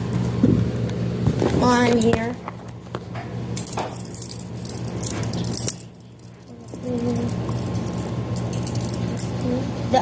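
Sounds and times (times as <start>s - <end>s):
toy handcuffs rattling and clicking: 3.6s - 10.0s.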